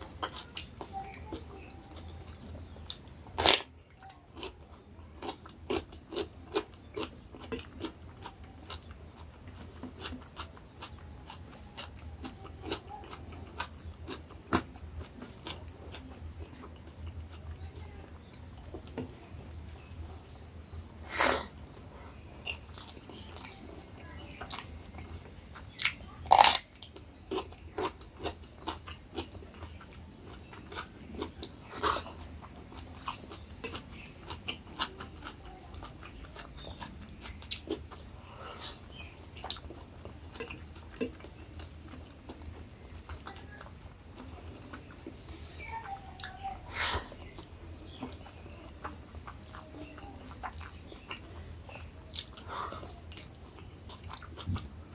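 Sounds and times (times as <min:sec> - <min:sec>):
chewing food: 0:00.0 - 0:54.9
crunchy bites or clinks: 0:03.4 - 0:03.7, 0:25.8 - 0:26.7.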